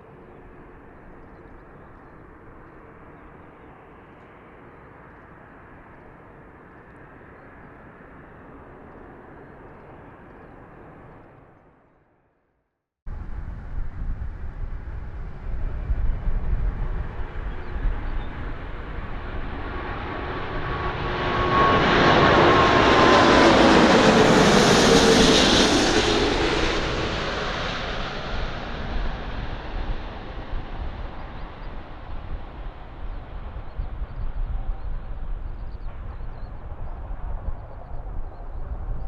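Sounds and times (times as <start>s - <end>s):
jet airliner passing: 13.1s - 39.0s.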